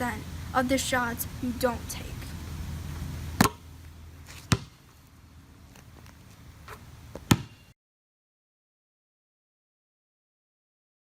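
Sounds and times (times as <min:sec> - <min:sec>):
sharp knocks: 0:03.4 - 0:03.6.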